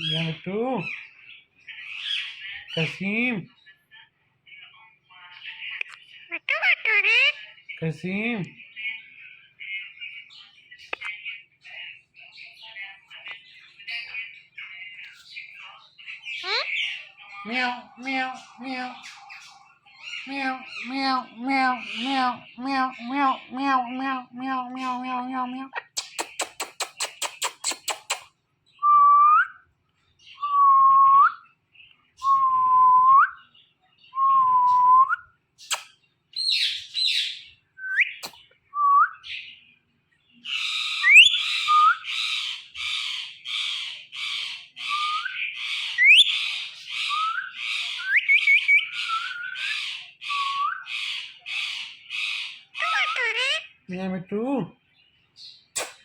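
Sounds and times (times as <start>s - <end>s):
parrot chirps: 25.7s - 28.3s, 35.6s - 38.4s, 40.5s - 53.9s, 55.6s - 56.0s
parrot whistles: 41.0s - 42.1s.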